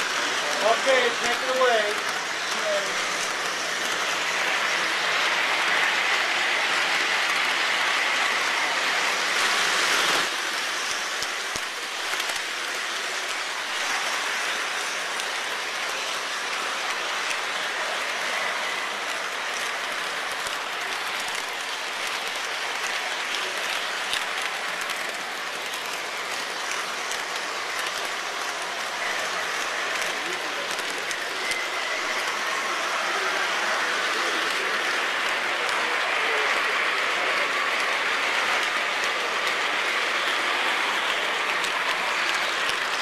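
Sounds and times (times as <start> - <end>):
model trains clattering on track: 0.0 - 43.0
people clapping and cheering: 16.9 - 43.0.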